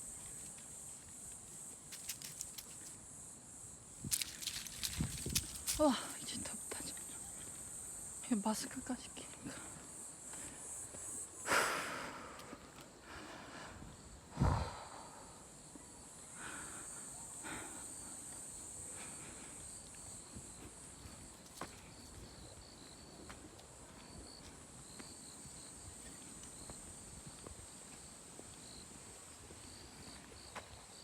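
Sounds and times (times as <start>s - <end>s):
insects chirping: 0.0s - 31.0s
footsteps in dry leaves: 4.0s - 6.2s.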